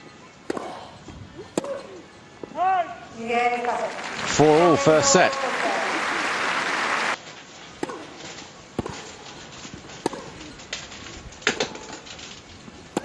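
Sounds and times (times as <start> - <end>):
racquets striking ball: 0.4 - 0.9, 1.5 - 2.6, 7.8 - 8.2, 8.8 - 9.2, 9.9 - 10.5
crowd applause: 3.6 - 7.2
ball bouncing: 7.8 - 8.2, 10.0 - 10.4.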